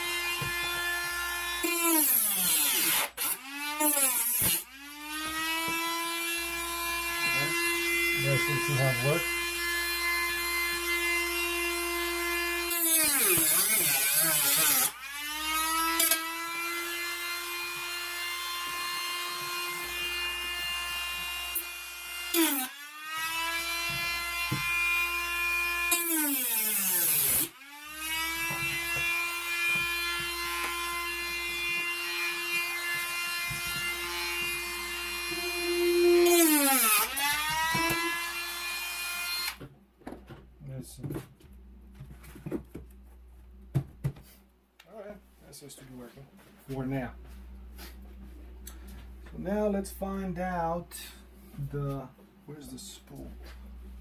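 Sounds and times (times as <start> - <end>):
rotary tool high whine: 29.2 - 39.6.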